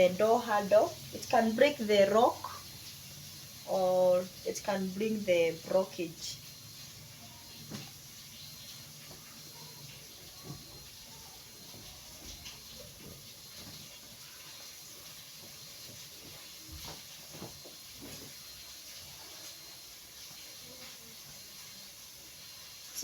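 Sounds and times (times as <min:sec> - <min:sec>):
background hiss: 0:00.0 - 0:23.0
clothes rustling: 0:11.7 - 0:14.2, 0:15.3 - 0:19.0.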